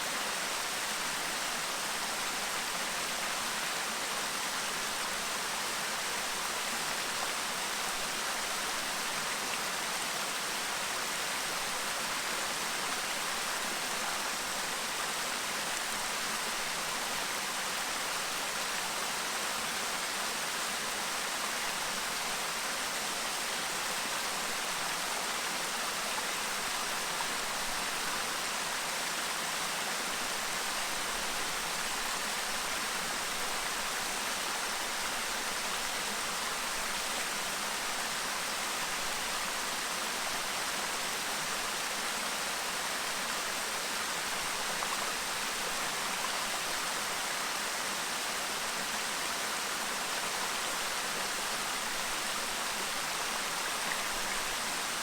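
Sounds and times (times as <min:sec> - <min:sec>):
stream babbling: 0:21.7 - 0:55.0.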